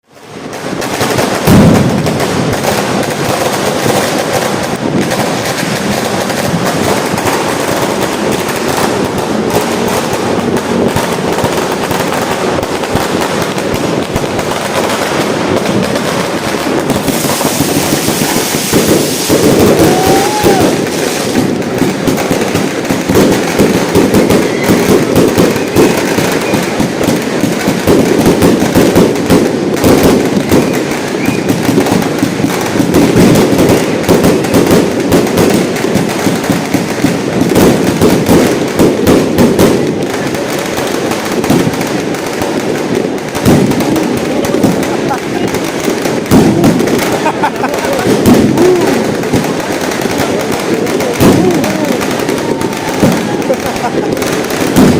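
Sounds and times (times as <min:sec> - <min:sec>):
fireworks barrage of shots: 0:00.0 - 0:54.9
rising firework whistle: 0:16.8 - 0:21.6, 0:24.0 - 0:26.9, 0:30.4 - 0:32.0.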